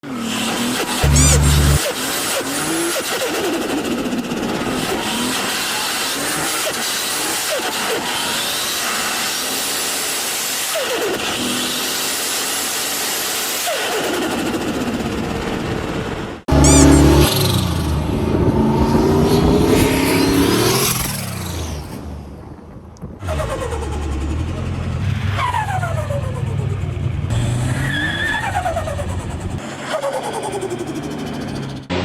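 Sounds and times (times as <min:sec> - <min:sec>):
turbocharged car engine revving: 0:00.0 - 0:15.7, 0:16.4 - 0:32.0
turbo whistle: 0:01.0 - 0:01.9, 0:16.5 - 0:17.9
compressor surge flutter: 0:01.0 - 0:02.3, 0:13.8 - 0:27.1.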